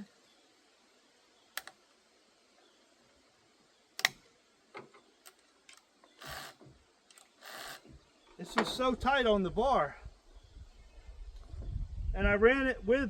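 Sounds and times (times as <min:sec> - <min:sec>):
chainsaw chain clicking and knocking: 0:05.3 - 0:08.0.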